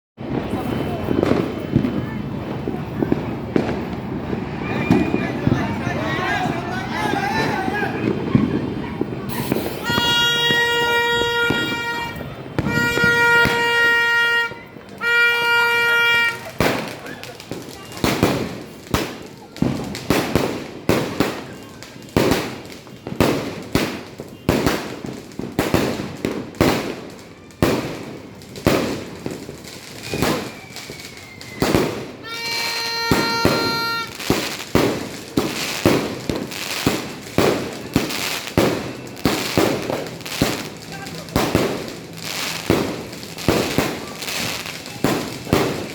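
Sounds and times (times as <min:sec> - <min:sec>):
fireworks bangs: 0:00.2 - 0:45.9
horn blasts: 0:09.8 - 0:16.4, 0:32.2 - 0:34.2
steady whistling tone: 0:30.0 - 0:31.8.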